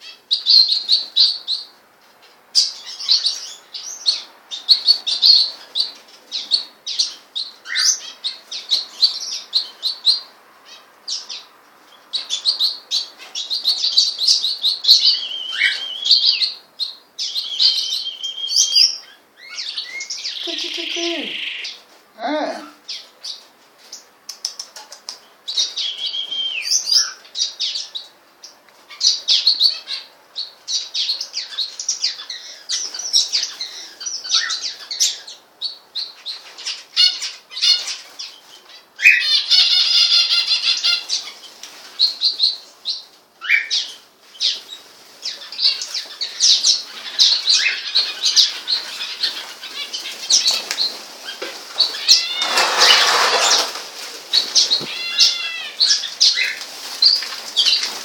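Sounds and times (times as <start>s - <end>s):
cage birds chirping: 0.0s - 58.0s
bird trill: 2.6s - 21.8s, 25.5s - 28.1s, 51.8s - 57.9s
wing flapping: 51.9s - 55.3s.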